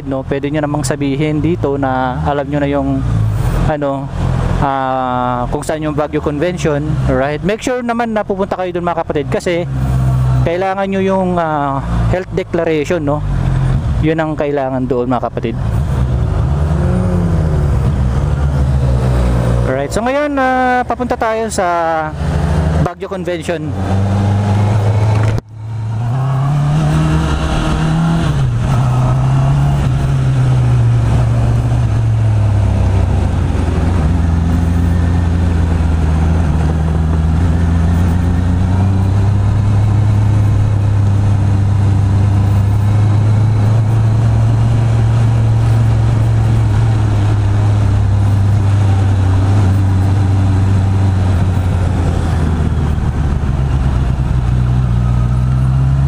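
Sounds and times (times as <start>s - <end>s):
motorcycle engine revving: 15.4s - 56.0s.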